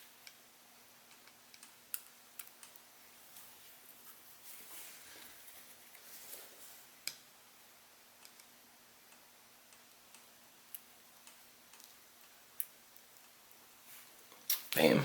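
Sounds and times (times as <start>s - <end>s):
soldering clicks and ticks: 1.0s - 2.9s, 7.0s - 7.3s, 8.2s - 8.5s, 9.1s - 13.6s.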